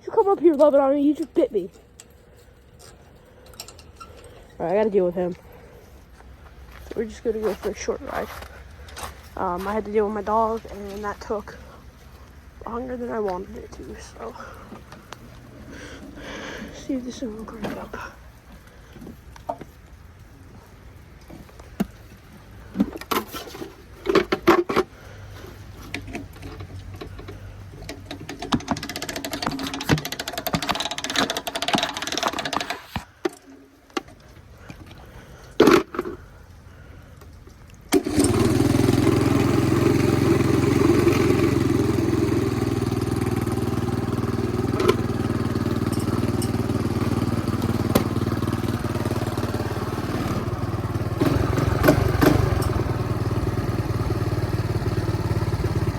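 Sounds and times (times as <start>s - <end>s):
motorbike engine starting: 6.9s - 19.2s, 21.6s - 33.5s, 37.8s - 55.9s
knocks and clatter: 25.9s - 33.4s.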